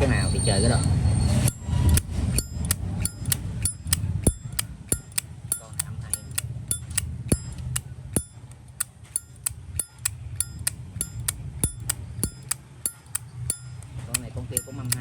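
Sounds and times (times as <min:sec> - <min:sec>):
metallic ringing ping: 0:01.4 - 0:08.5, 0:09.1 - 0:15.0
lighter lid clicking open and shut: 0:01.5 - 0:15.0.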